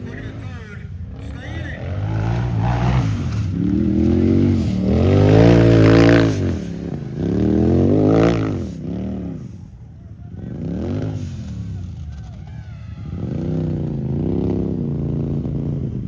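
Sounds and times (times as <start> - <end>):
engine revving: 0.0 - 9.7, 10.4 - 16.0.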